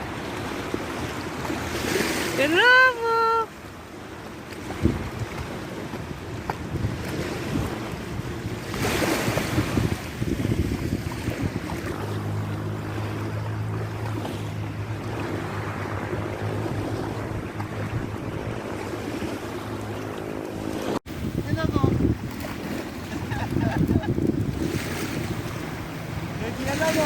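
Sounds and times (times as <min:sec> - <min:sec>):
water noise: 0:00.0 - 0:27.0
wind buffeting microphone: 0:04.6 - 0:27.0.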